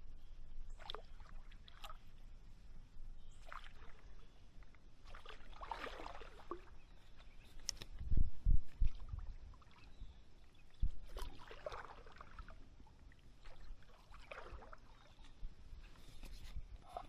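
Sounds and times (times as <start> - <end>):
paddle splashing in water: 0.8 - 2.2, 3.4 - 4.2, 5.0 - 6.8, 10.6 - 12.6, 13.2 - 15.2.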